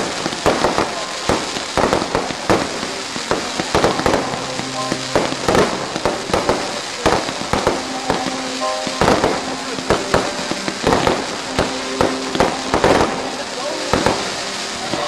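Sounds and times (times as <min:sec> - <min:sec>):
crackling hiss: 0:00.0 - 0:15.0
fireworks bangs: 0:00.0 - 0:15.0
steady pitched tone: 0:02.3 - 0:15.0.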